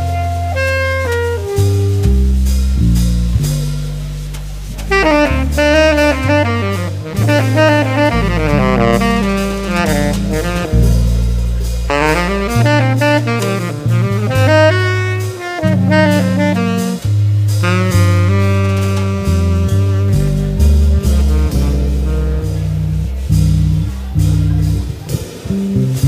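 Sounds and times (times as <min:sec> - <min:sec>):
bass line: 0:00.0 - 0:26.0
drums: 0:00.0 - 0:26.0
saxophone runs: 0:04.7 - 0:23.1.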